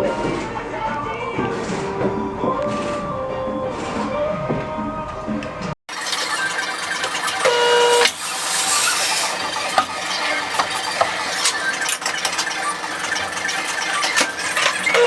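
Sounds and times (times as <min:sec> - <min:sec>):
metal clanks and clicks: 0:07.0 - 0:15.0.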